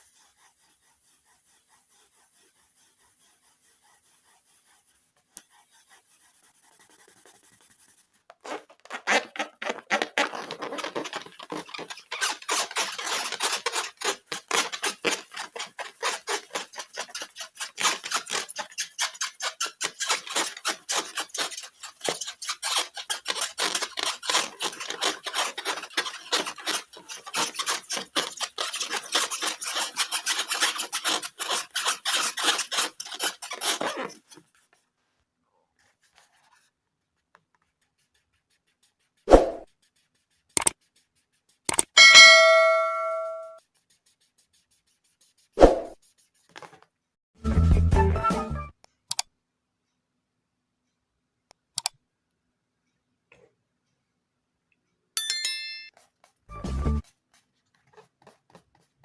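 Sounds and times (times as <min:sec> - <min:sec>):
rapid scratchy rubbing: 0:00.0 - 0:35.2, 0:37.6 - 0:46.8, 0:57.0 - 0:59.0.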